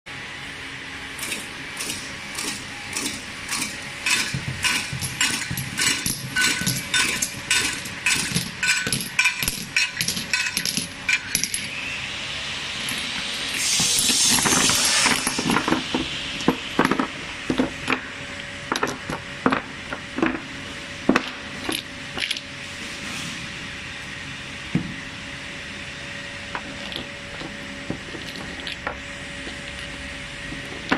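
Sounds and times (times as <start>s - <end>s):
machine motor hum: 10.8s - 18.5s
burst of hiss: 11.7s - 16.8s.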